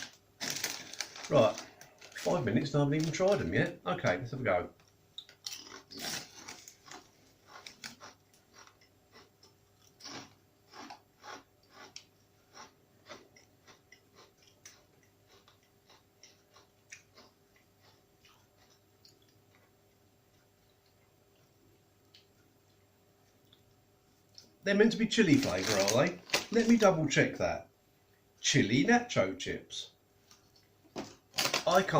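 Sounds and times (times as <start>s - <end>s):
person chewing crunchy chips: 0.0s - 3.5s, 4.8s - 24.6s, 25.3s - 26.8s, 31.3s - 31.9s.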